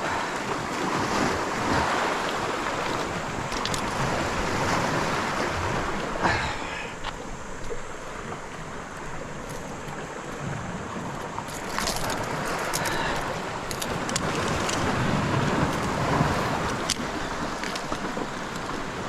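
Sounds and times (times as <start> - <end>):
sea water sloshing: 0.0 - 19.0
wind on microphone: 0.0 - 19.0.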